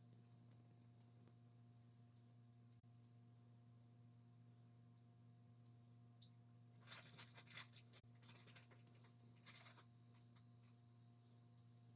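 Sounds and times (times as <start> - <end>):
electrical hum: 0.0 - 11.9
faint high whine: 0.0 - 11.9
scratchy crackling rustles: 6.8 - 9.9.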